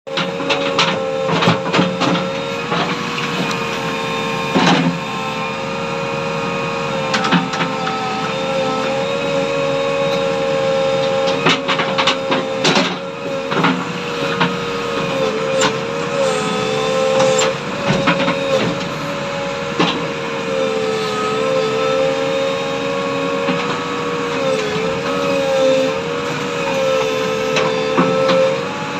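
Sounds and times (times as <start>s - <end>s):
hydraulic whine: 0.1s - 28.9s.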